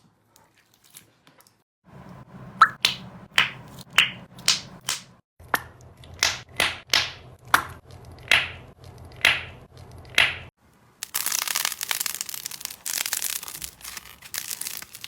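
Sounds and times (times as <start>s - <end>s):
slime popping stickily: 11.0s - 15.0s.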